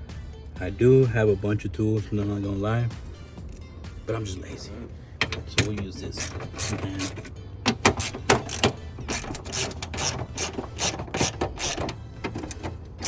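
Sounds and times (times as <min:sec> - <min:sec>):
hand ratchet clicking: 0:05.2 - 0:13.0.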